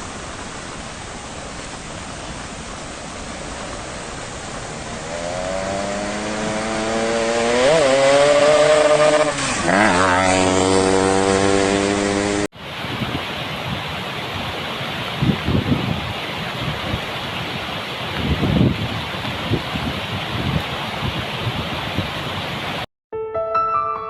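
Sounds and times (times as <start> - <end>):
steady rushing noise: 0.0 - 22.8
small motorcycle engine: 4.6 - 12.5.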